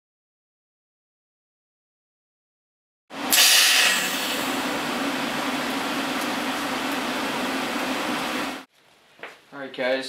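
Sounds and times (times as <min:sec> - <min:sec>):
power tool hissing and humming: 0:03.2 - 0:08.7.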